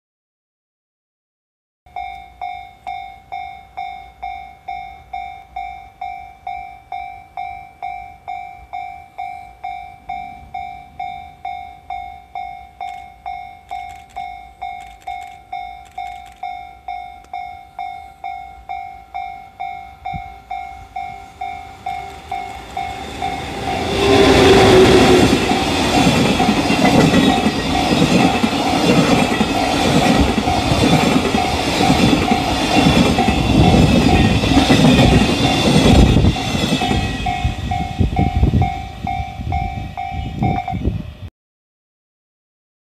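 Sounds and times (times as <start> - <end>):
level crossing bell ringing: 1.9 - 28.5
train passing: 4.2 - 41.3.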